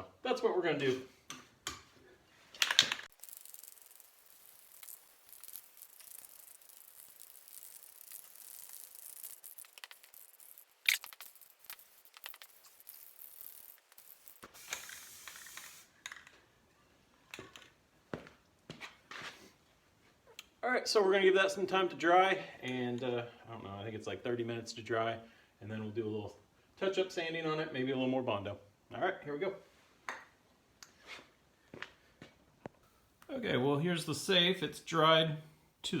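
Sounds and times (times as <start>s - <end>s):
spray paint hissing onto metal: 3.0s - 16.0s.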